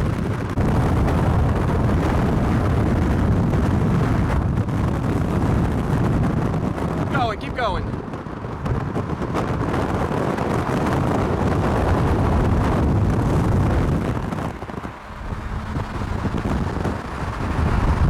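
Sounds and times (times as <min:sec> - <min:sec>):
vehicle driving fast: 0:00.0 - 0:18.0
wind buffeting microphone: 0:00.0 - 0:18.0.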